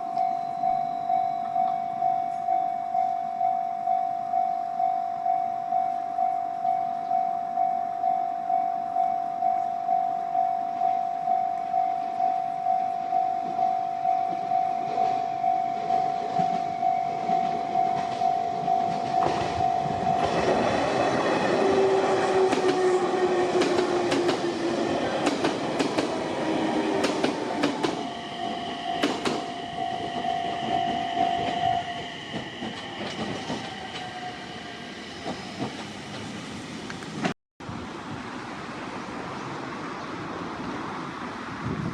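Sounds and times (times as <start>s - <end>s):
electronic crossing bell dinging: 0.0s - 20.6s, 28.0s - 32.8s
train wheels clicking over rail joints: 15.8s - 34.3s, 35.2s - 37.3s.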